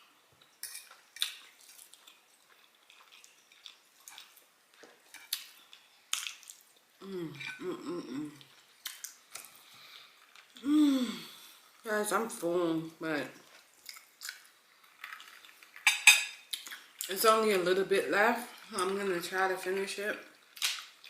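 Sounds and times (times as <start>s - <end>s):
chewing with mouth clicks: 0.5s - 6.8s, 13.4s - 15.8s.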